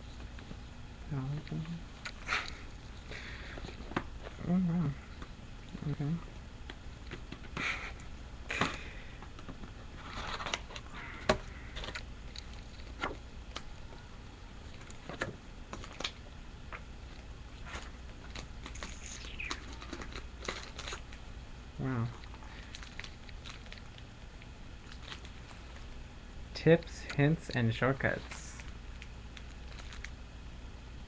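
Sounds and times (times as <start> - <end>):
paper and plastic packing rustling: 9.9 - 11.0, 17.6 - 21.2, 22.2 - 24.0.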